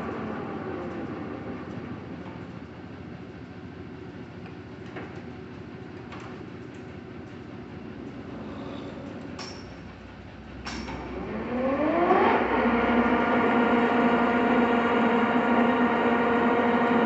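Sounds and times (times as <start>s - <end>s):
rising machine whine: 10.8s - 17.0s
lathe motor running: 11.0s - 17.0s.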